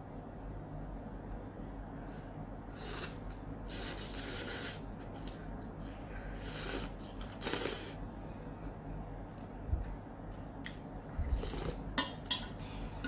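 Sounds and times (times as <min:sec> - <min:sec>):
noodles being slurped: 0:02.8 - 0:05.5, 0:06.3 - 0:08.0, 0:11.2 - 0:11.9.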